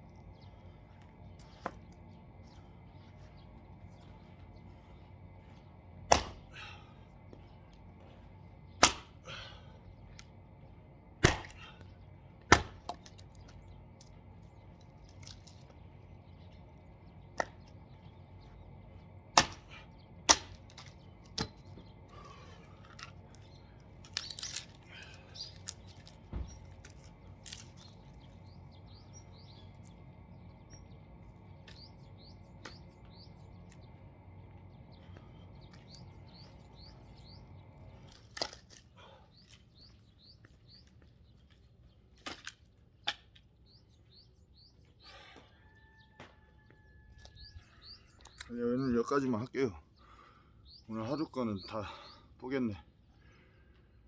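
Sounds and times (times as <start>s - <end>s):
axe splitting firewood: 6.0s - 6.8s, 8.8s - 10.3s, 11.1s - 14.1s, 19.3s - 22.4s, 38.0s - 39.1s, 42.1s - 43.3s.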